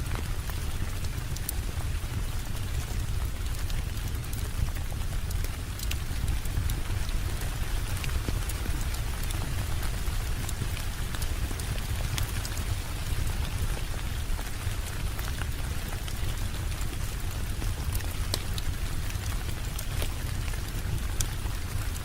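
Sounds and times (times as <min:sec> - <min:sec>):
steady rain: 0:00.0 - 0:22.0
fireplace crackling: 0:03.5 - 0:06.5.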